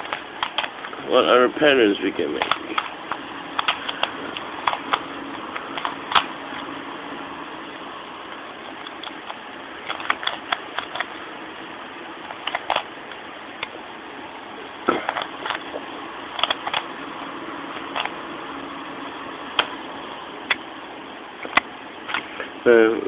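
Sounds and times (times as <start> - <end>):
rubik's cube clicking: 0.4 - 0.7, 9.9 - 11.1, 12.4 - 12.9, 16.4 - 16.8.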